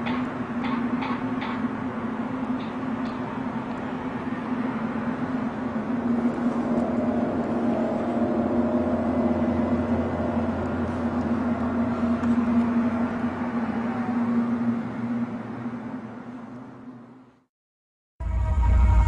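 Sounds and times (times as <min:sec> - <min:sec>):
deep rumble: 0:05.2 - 0:15.4, 0:18.2 - 0:19.0.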